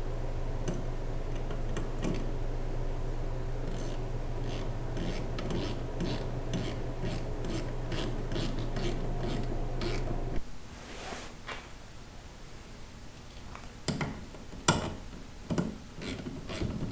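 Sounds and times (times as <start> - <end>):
steady low hum: 0.0 - 10.8.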